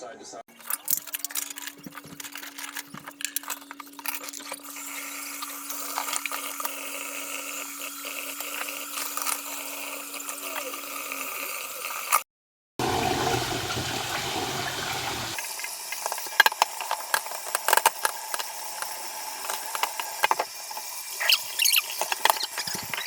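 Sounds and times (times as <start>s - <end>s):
water running: 0.6s - 12.2s, 12.8s - 23.0s.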